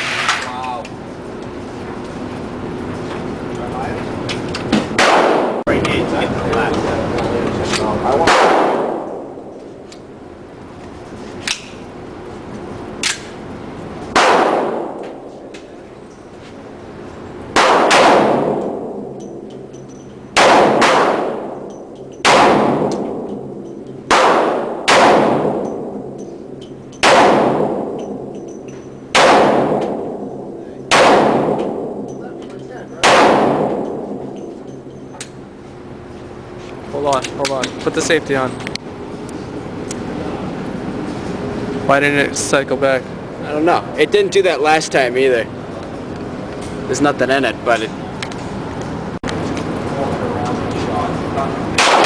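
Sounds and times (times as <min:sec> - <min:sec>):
gunshots with echo: 0:04.9 - 0:05.7, 0:08.1 - 0:09.5, 0:14.2 - 0:15.0, 0:17.5 - 0:19.1, 0:20.4 - 0:26.2, 0:27.0 - 0:28.3, 0:29.1 - 0:32.1, 0:33.0 - 0:34.4, 0:51.8 - 0:52.0.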